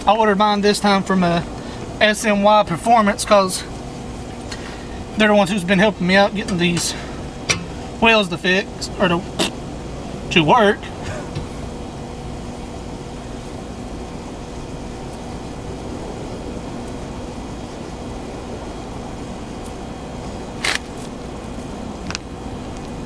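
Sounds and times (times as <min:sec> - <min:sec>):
mechanical fan hum: 0:00.0 - 0:23.0.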